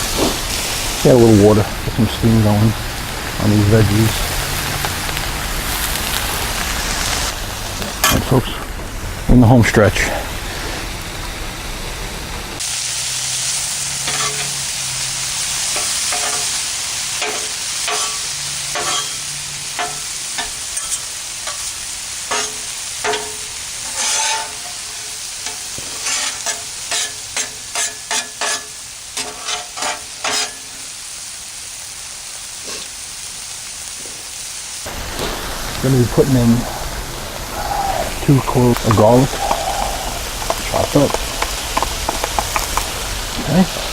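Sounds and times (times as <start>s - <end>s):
vegetables sizzling on griddle: 0.0s - 43.9s
metal spatula clinking and scraping: 14.0s - 14.7s, 15.7s - 30.8s.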